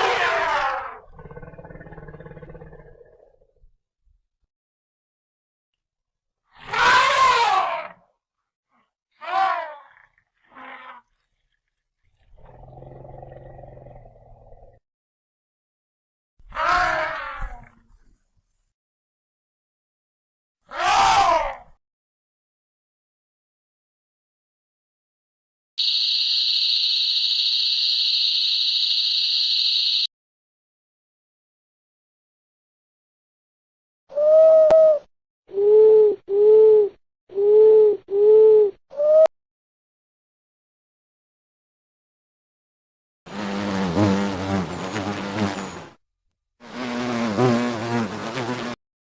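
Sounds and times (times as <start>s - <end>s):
flying insect buzzing: 43.3s - 45.9s, 46.6s - 48.8s.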